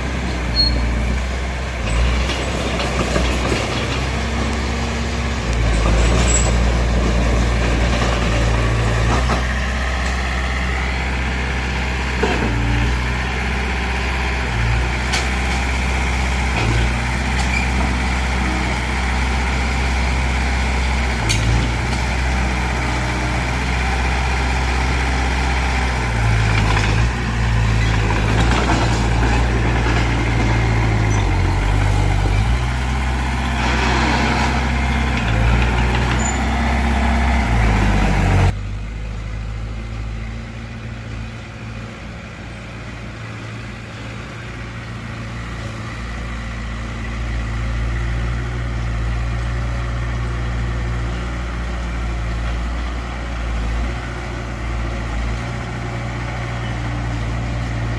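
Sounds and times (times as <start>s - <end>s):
heavy diesel engine running: 0.0s - 57.9s.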